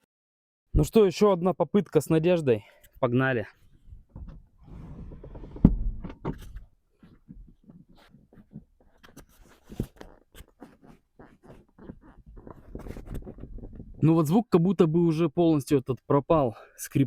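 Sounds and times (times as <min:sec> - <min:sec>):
seat sliding on rails: 0:04.6 - 0:05.8.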